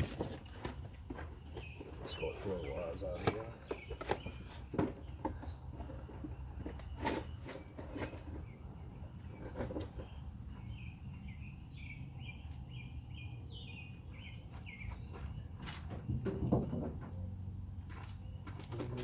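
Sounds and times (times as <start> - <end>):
small bird chirping: 1.2 - 16.3.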